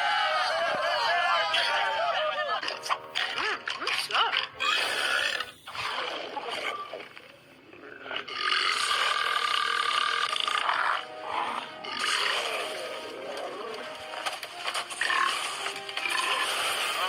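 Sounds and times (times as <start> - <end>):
creature burping: 2.7 - 6.8, 7.8 - 12.9.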